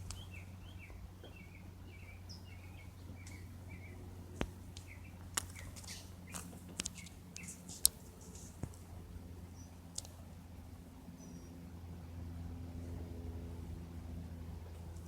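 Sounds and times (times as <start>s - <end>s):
small birds chirping: 0.0s - 8.8s, 9.4s - 10.2s, 11.0s - 11.7s
low steady hum: 0.0s - 15.0s
sharp clicks: 9.9s - 10.2s.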